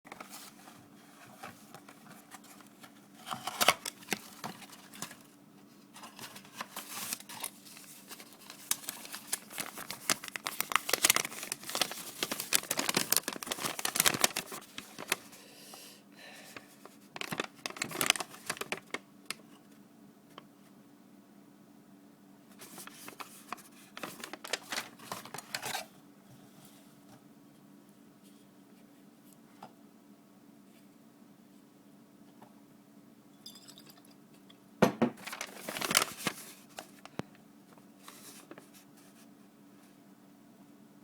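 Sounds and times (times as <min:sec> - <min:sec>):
paper crinkling and rustling: 0:00.1 - 0:15.4, 0:16.5 - 0:19.7, 0:22.5 - 0:25.9, 0:35.2 - 0:39.3.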